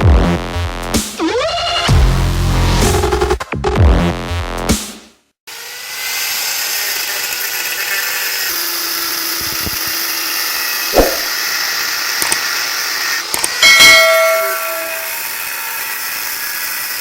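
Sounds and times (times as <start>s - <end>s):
power tool cutting metal: 5.5s - 17.0s.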